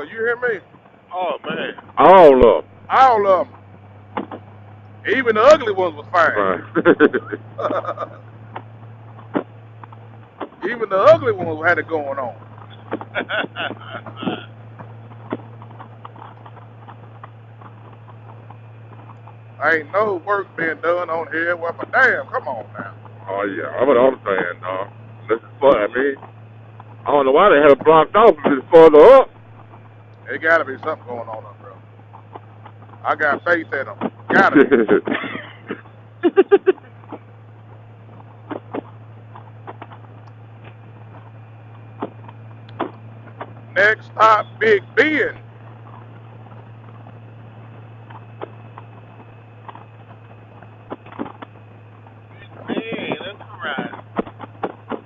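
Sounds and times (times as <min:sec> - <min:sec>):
motorcycle engine drone: 0:00.0 - 0:55.0
steady low hum: 0:00.0 - 0:55.0
person laughing: 0:06.4 - 0:08.3, 0:12.7 - 0:14.6, 0:23.8 - 0:24.8, 0:34.3 - 0:37.2.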